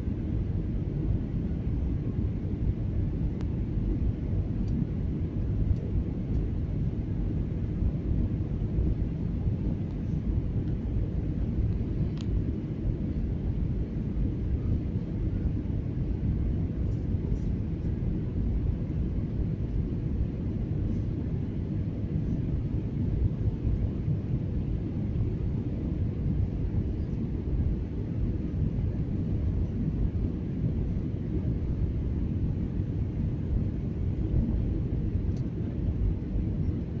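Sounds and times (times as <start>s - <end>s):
jet engines rumbling in cabin: 0.0s - 37.0s
faint click: 5.7s - 6.4s, 12.1s - 12.4s, 35.3s - 35.6s.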